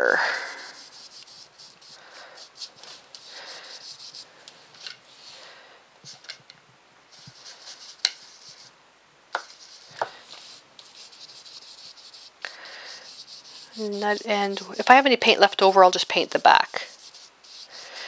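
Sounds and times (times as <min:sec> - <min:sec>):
paintbrush scrubbing on paper: 0:00.2 - 0:04.3, 0:07.1 - 0:08.7, 0:09.4 - 0:18.0.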